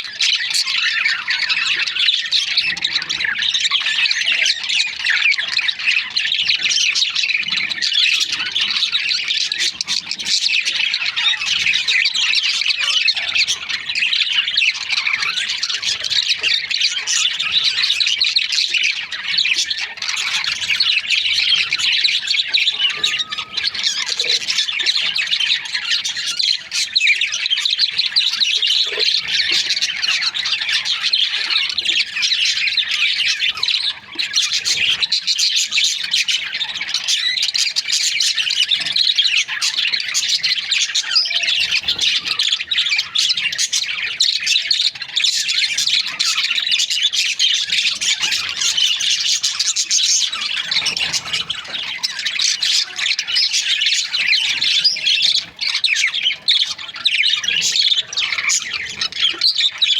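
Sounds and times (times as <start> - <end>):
budgerigars chattering and chirping: 0.0 - 59.9.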